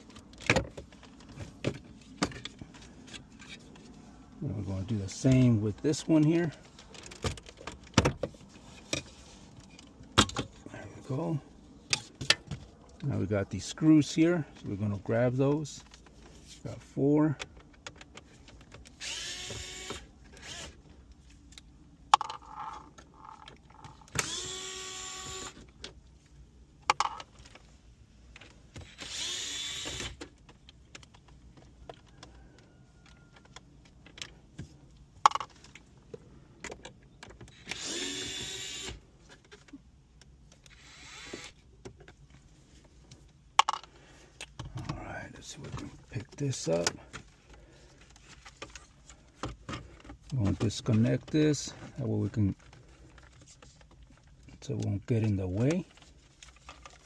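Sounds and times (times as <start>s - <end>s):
electric screwdriver spinning: 19.0s - 20.8s, 22.5s - 25.6s, 28.8s - 30.2s, 37.5s - 39.0s, 40.7s - 41.6s.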